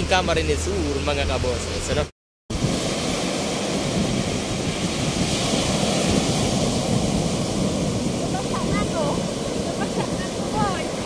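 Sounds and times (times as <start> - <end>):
wind buffeting microphone: 1.5 - 11.0
heavy waves breaking on beach: 2.5 - 11.0.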